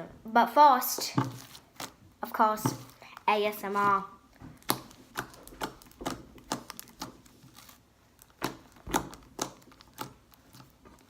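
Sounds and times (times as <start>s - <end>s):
slime clicking and popping: 4.6s - 7.3s, 8.2s - 11.0s.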